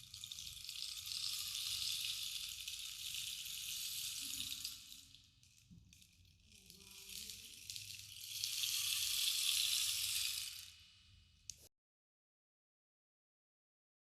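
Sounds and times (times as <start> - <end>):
rainstick trickling patter: 0.0 - 11.0.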